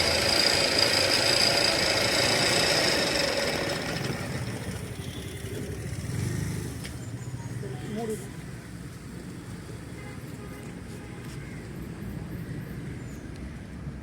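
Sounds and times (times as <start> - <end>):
mixer grinder whirring: 0.0 - 5.7.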